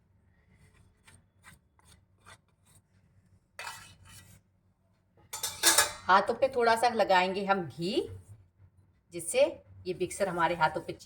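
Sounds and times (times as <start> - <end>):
bowl scraping and rubbing: 3.6 - 4.4.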